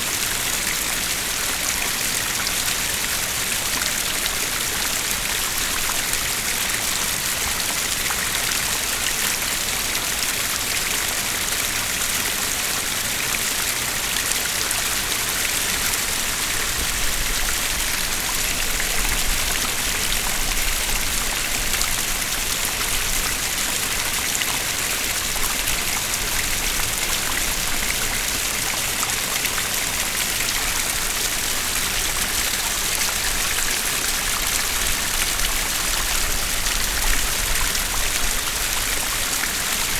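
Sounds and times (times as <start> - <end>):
stream splashing over rocks: 0.0 - 39.9.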